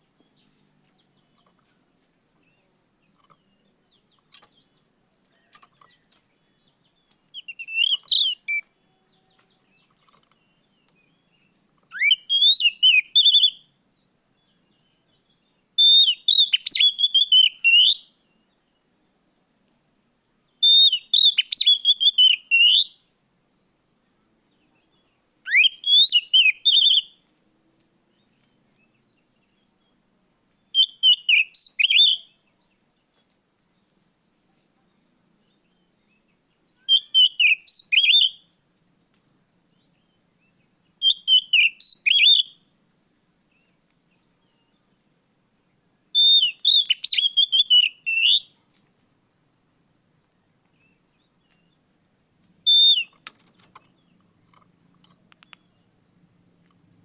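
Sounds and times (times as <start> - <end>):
bird singing whistled phrases: 7.3 - 8.7, 11.9 - 13.6, 15.8 - 18.1, 20.6 - 23.0, 25.5 - 27.2, 30.7 - 32.4, 36.8 - 38.5, 41.0 - 42.6, 46.2 - 48.6, 52.7 - 53.2.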